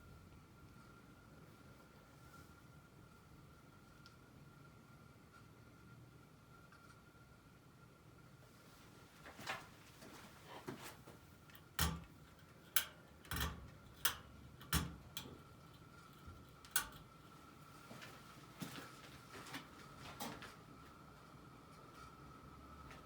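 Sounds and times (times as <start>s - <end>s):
ceiling fan motor whine: 0.0s - 23.0s.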